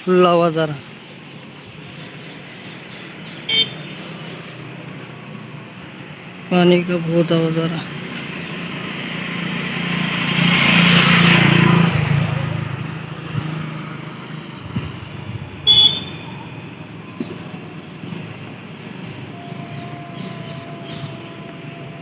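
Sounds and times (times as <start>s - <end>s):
vehicle passing: 2.5s - 22.0s
high-pitched toot: 15.6s - 16.4s.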